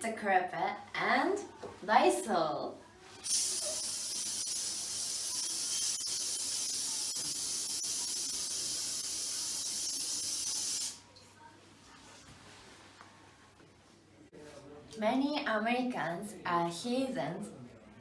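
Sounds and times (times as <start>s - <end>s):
aerosol spray can hissing: 3.2s - 11.0s.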